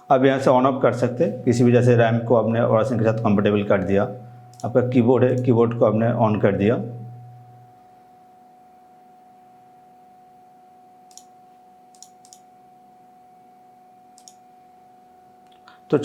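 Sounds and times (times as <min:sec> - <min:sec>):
faint steady hum: 0:00.0 - 0:16.0
computer mouse clicks: 0:04.5 - 0:04.8, 0:11.1 - 0:11.3, 0:11.9 - 0:12.5, 0:14.2 - 0:14.4.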